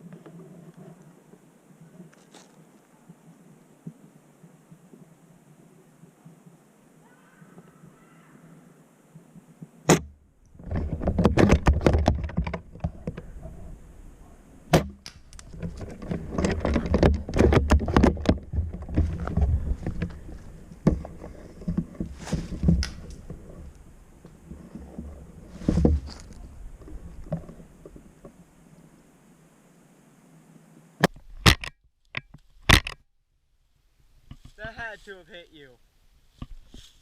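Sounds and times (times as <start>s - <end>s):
knocking and rustling: 9.9s - 13.7s, 14.7s - 28.4s.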